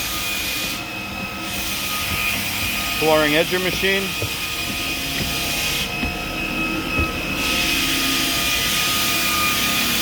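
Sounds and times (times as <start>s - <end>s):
floor sander motor whine: 0.0s - 10.0s
sander hiss: 0.0s - 10.0s.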